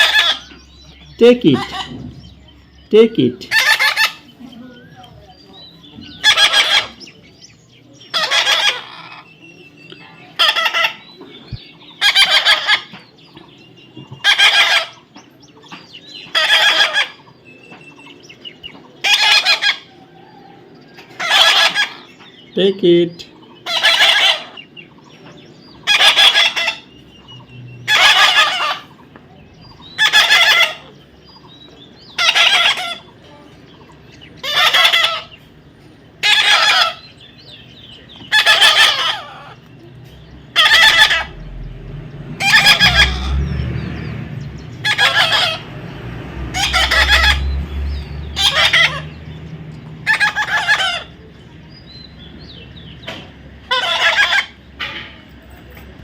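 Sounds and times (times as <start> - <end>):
parrot squawking: 0.0 - 0.6, 1.5 - 2.0, 3.4 - 4.3, 6.1 - 7.1, 8.1 - 9.3, 10.4 - 11.1, 12.0 - 12.9, 14.2 - 15.0, 16.3 - 17.2, 19.0 - 19.9, 21.2 - 22.2, 23.6 - 24.6, 25.8 - 26.9, 27.9 - 28.9, 29.9 - 30.9, 32.1 - 33.1, 34.4 - 35.4, 36.2 - 37.2, 38.3 - 39.6, 40.5 - 41.5, 42.4 - 43.5, 44.8 - 45.7, 46.5 - 49.2, 50.0 - 51.2, 53.6 - 55.0
low rumble: 39.8 - 50.0.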